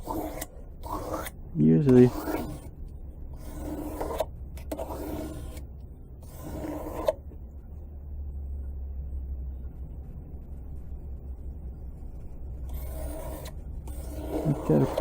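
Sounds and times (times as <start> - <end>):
knife rasping on sharpening stone: 0.0 - 1.4, 2.0 - 2.7, 12.7 - 15.0
low hum: 2.2 - 15.0.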